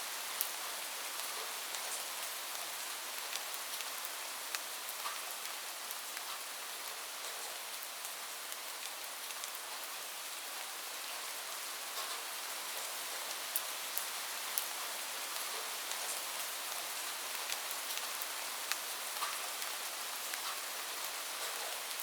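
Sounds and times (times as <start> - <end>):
steady rain hiss: 0.0 - 22.0
raindrops ticking close by: 11.9 - 22.0.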